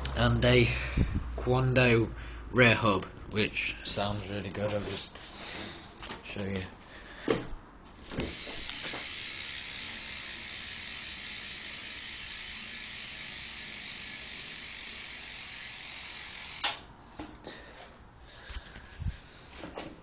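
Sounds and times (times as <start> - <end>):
bike hub ratchet buzzing: 8.0 - 16.9.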